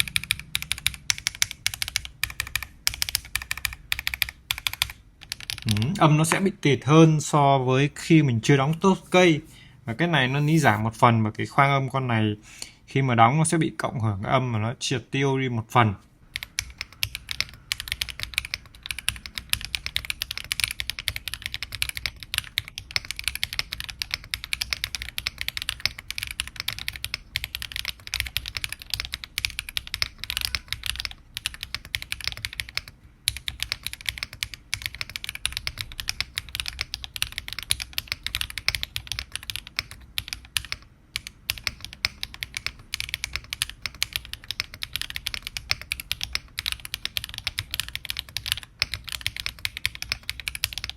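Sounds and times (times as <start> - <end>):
mechanical keyboard typing: 0.0 - 6.0, 16.3 - 50.9.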